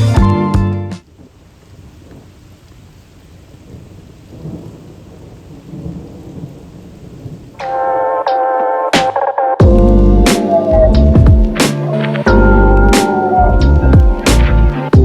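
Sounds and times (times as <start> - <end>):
soft steady hiss: 1.0 - 7.6
loud music: 7.6 - 15.0
low rumbles: 9.6 - 15.0.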